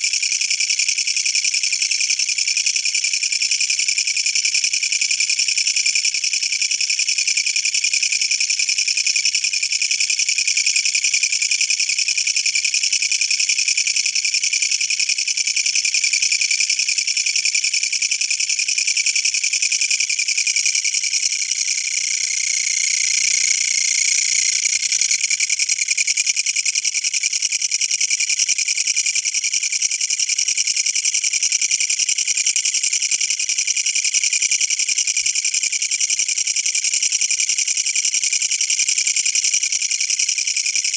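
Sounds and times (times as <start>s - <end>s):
katydid stridulating: 0.0s - 40.9s.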